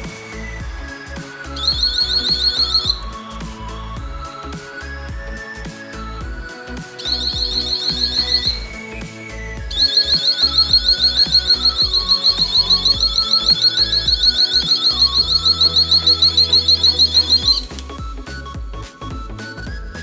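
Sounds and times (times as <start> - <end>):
background music: 0.0 - 20.0
alarm buzzer pulsing shrill tone: 1.6 - 3.0, 7.0 - 8.8, 9.7 - 17.8.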